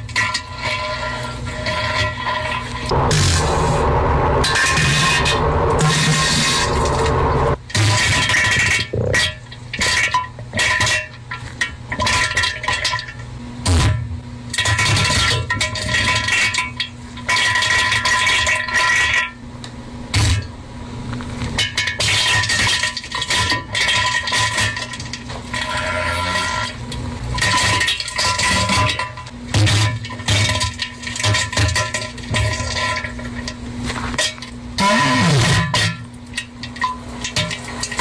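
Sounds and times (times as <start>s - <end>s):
comic toilet sound effect: 2.9s - 7.6s, 34.8s - 35.8s.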